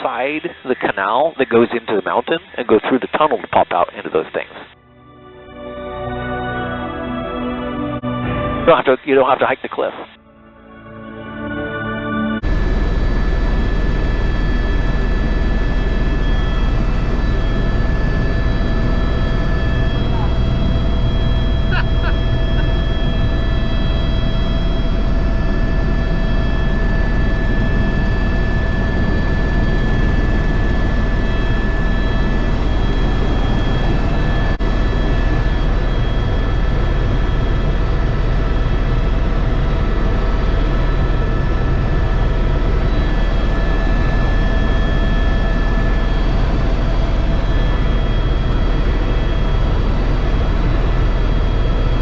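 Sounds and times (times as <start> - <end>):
helicopter turbine whine: 0.0 - 52.0
low helicopter drone: 12.1 - 52.0.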